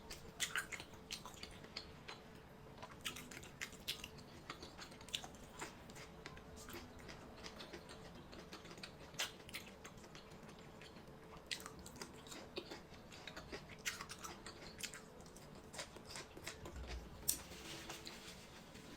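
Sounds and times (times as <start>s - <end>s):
person chewing food: 0.0s - 18.3s.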